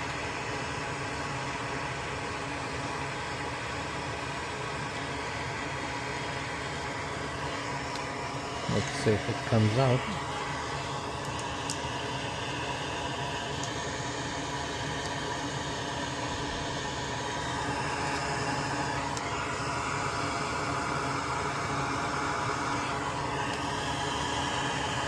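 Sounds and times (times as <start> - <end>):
electric blower hissing: 5.6 - 25.0.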